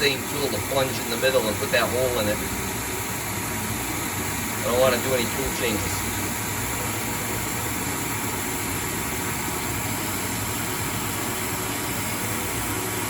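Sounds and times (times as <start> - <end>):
lathe machine hum and hiss: 0.0 - 13.0.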